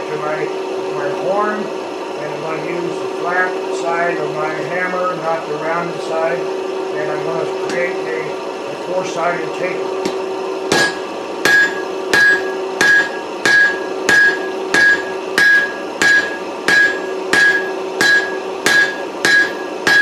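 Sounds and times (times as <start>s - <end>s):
steady hum: 0.0s - 20.0s
hammer striking hot steel on anvil: 10.0s - 20.0s.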